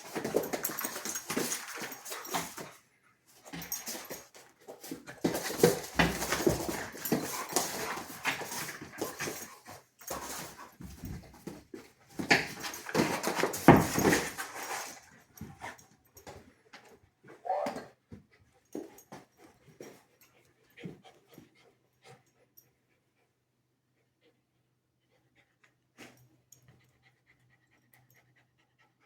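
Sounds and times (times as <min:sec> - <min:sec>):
husky whining: 0:17.3 - 0:18.0.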